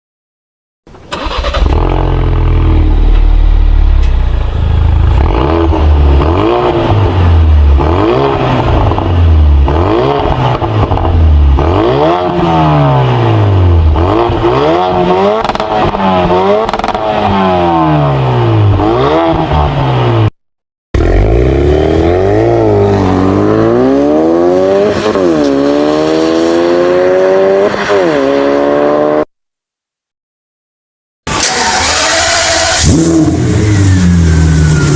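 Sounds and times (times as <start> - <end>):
racing car engine revving: 21.0 - 29.3.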